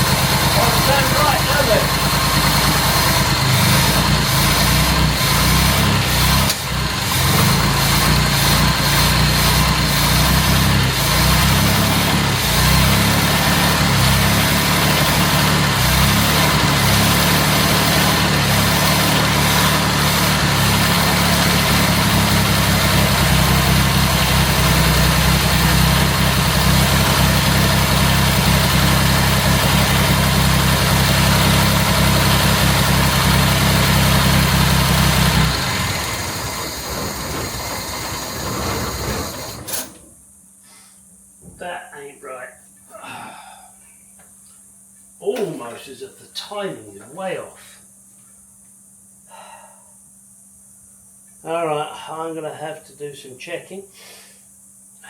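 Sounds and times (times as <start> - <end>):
car engine running roughly: 0.0 - 39.9.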